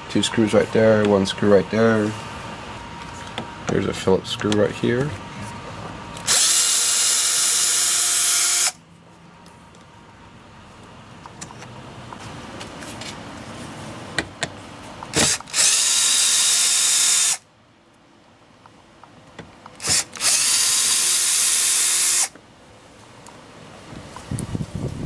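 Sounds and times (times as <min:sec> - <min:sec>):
power drill running: 0:06.2 - 0:08.8, 0:15.1 - 0:17.4, 0:19.8 - 0:22.3.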